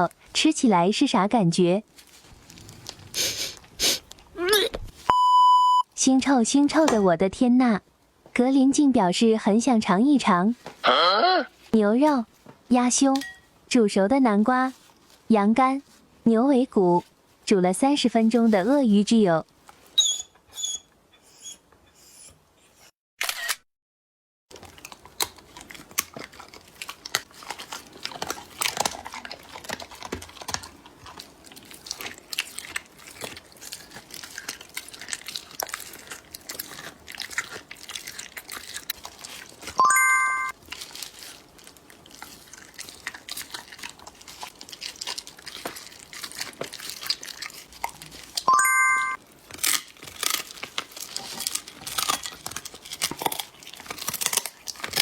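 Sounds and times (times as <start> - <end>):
dog chewing and crunching food: 1.9 - 5.1, 24.5 - 55.0
short electronic chime: 48.5 - 49.2.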